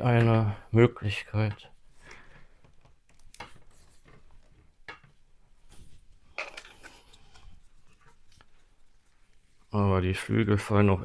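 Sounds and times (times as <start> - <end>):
soft rustle: 1.7 - 10.5.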